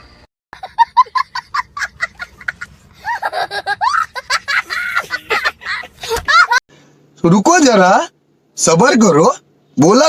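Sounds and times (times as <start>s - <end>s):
person laughing: 0.6s - 6.6s.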